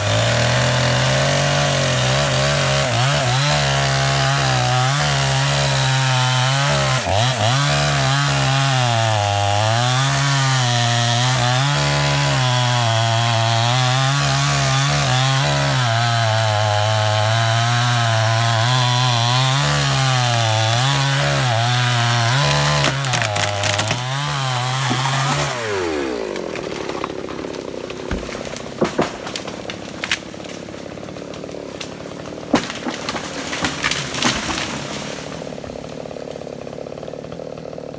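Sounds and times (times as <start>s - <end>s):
chainsaw cutting tree: 0.0s - 37.9s
sharp cracks: 22.6s - 24.1s, 24.7s - 36.0s.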